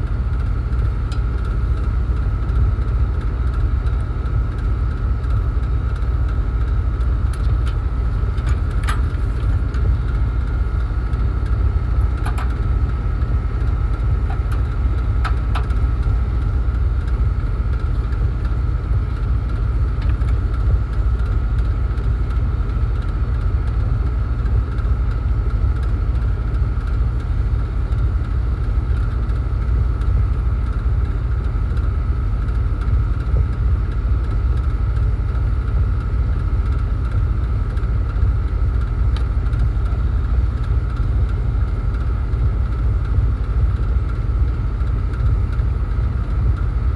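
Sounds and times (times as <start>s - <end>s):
high machine whine: 0.0s - 46.9s
machinery low rumble: 0.0s - 46.9s.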